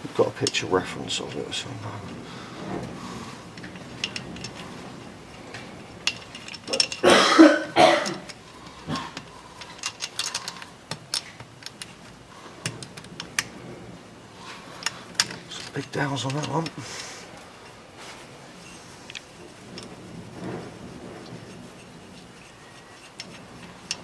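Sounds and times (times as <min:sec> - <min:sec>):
metal parts clicking: 0:03.4 - 0:07.2, 0:08.0 - 0:13.6, 0:14.6 - 0:17.8, 0:18.6 - 0:24.0
person coughing: 0:07.0 - 0:08.3.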